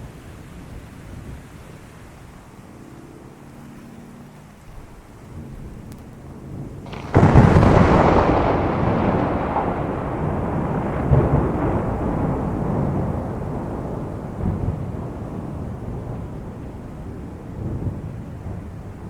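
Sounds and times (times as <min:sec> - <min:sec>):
heavy rain: 0:00.0 - 0:19.0
thunder crack and rumble: 0:05.3 - 0:19.0.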